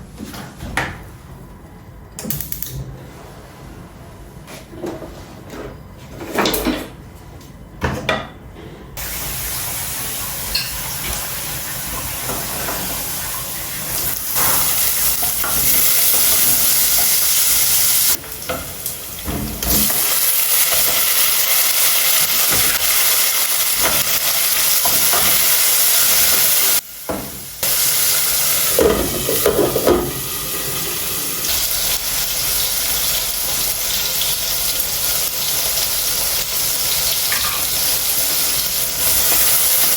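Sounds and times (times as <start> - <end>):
food sizzling in a pan: 9.0 - 39.9
cookware knocking: 28.8 - 30.2.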